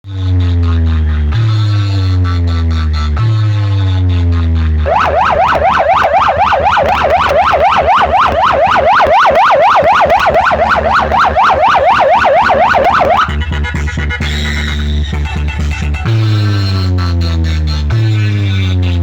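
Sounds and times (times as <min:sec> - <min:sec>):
dance beat and bass: 0:00.4 - 0:19.0
falling synth tones: 0:04.9 - 0:13.4
wailing siren effect: 0:04.9 - 0:13.4.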